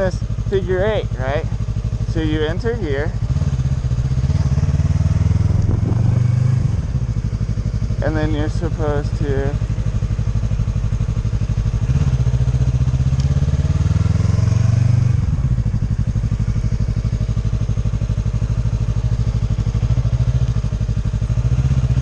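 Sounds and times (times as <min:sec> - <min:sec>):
motorcycle engine revving: 0:00.0 - 0:22.0.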